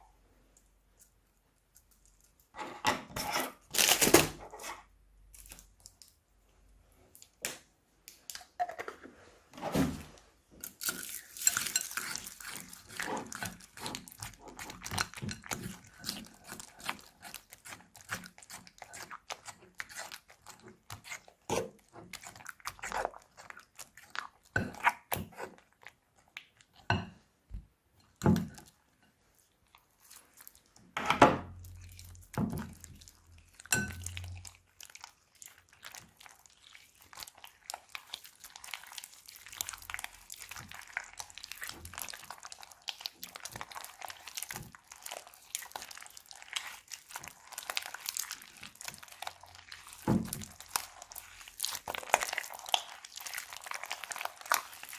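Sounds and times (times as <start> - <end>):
crunchy slime crackling: 31.7 - 54.9
slime crunches: 31.7 - 54.9.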